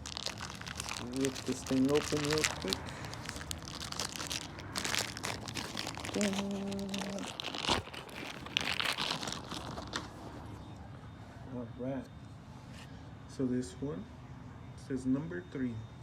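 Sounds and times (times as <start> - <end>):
small plastic parts handled: 0.0 - 10.3
plastic packaging crinkling: 0.0 - 10.6.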